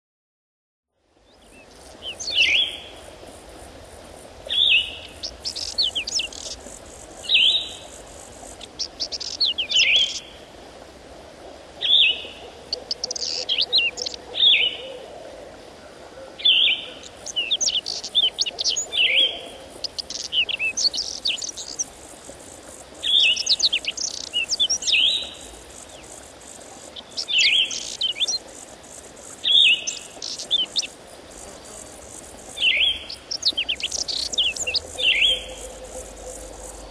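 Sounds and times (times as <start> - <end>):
songbirds singing: 1.2 - 3.2, 4.4 - 10.4, 11.8 - 15.0, 16.3 - 36.9
other bird calls: 32.7 - 36.9.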